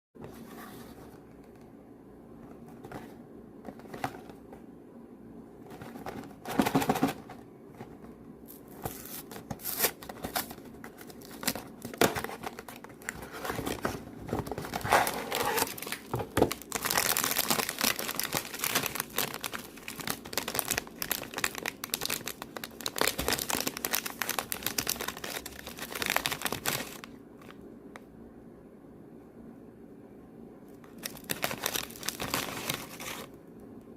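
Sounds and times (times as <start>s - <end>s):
snack packaging crinkling and tearing: 8.5s - 27.1s, 30.8s - 33.3s.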